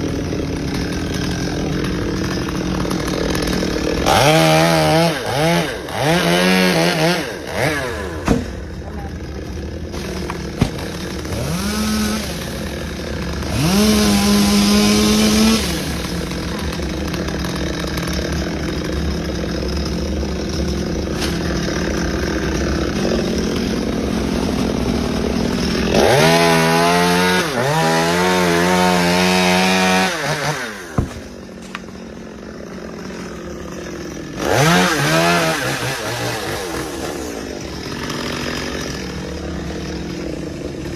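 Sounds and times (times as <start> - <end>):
chainsaw revving: 0.0 - 40.9.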